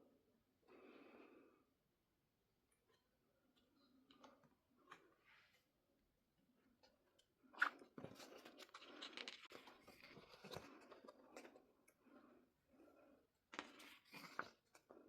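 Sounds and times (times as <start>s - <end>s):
pages rustling and turning: 7.6s - 11.6s, 13.6s - 14.9s.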